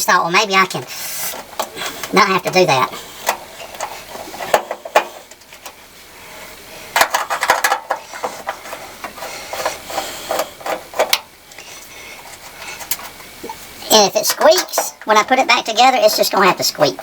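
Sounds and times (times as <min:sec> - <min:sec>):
sheet metal knocks and rattles: 0:03.3 - 0:05.8, 0:07.0 - 0:11.3.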